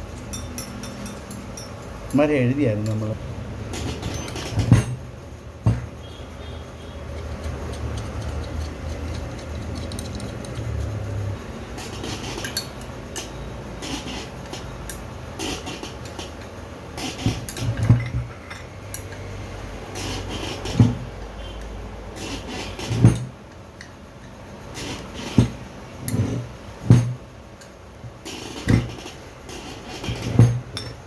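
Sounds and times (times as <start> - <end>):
metal parts and tools clinking: 0.0 - 5.1, 5.7 - 19.3, 20.0 - 31.0.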